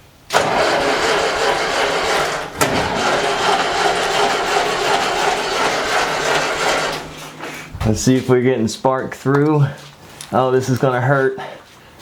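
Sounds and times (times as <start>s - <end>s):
tractor engine cranking: 0.0s - 8.3s
starter click: 0.3s - 8.0s.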